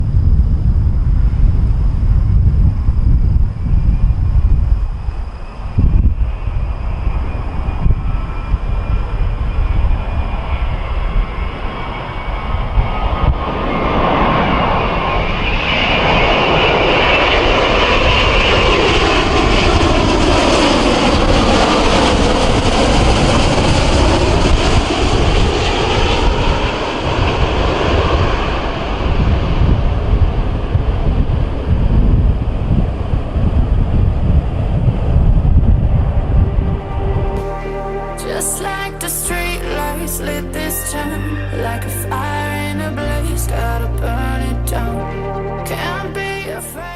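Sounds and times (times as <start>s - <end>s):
wind rumble on microphone: 0.0s - 37.4s
jet airliner passing overhead: 0.0s - 46.9s.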